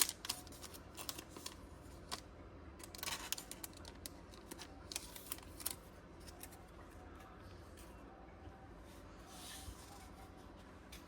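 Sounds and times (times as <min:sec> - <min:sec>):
packaging rustle: 0:00.0 - 0:02.2, 0:02.8 - 0:06.6.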